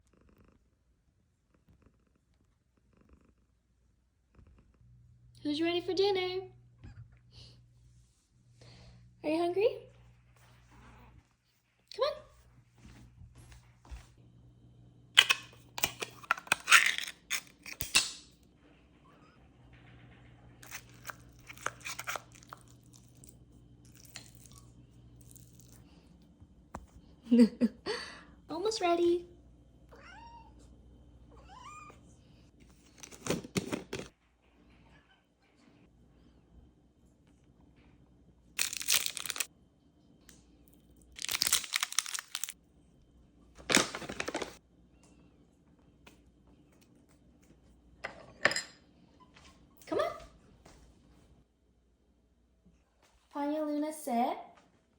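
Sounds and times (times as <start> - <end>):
packaging crinkling and tearing: 15.2 - 18.1, 20.6 - 23.2, 32.8 - 34.1, 38.6 - 39.5, 41.1 - 42.6, 43.6 - 44.6
crunching and crackling clicks: 20.6 - 25.8, 38.6 - 39.5, 40.3 - 42.6.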